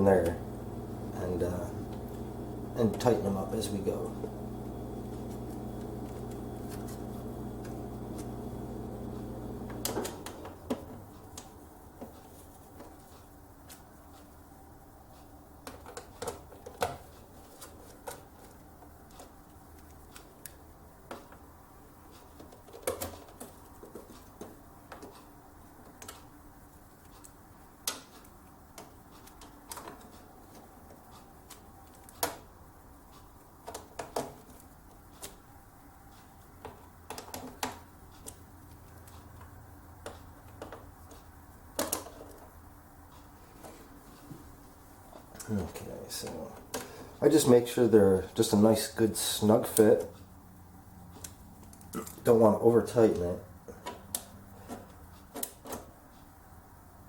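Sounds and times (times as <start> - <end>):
faint low hum: 0.0 - 15.4.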